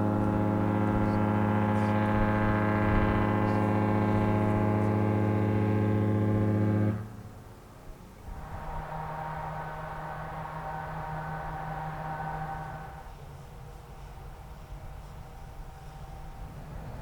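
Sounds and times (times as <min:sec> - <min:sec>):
ship horn deep blast: 0:00.0 - 0:07.5, 0:08.2 - 0:13.6.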